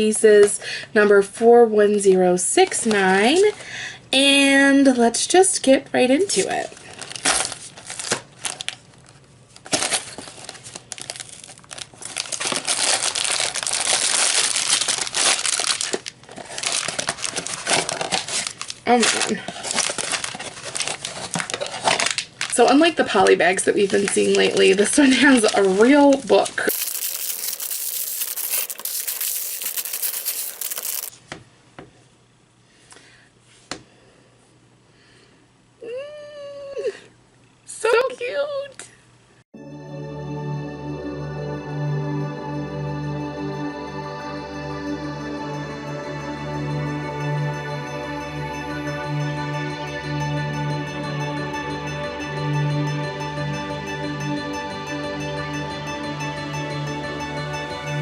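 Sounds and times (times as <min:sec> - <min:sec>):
plastic packaging crinkling: 0:06.8 - 0:22.6, 0:23.8 - 0:31.1.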